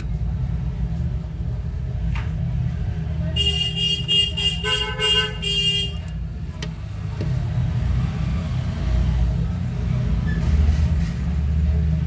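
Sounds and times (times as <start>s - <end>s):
low traffic rumble: 0.0s - 12.0s
car horn tooting: 3.4s - 6.1s.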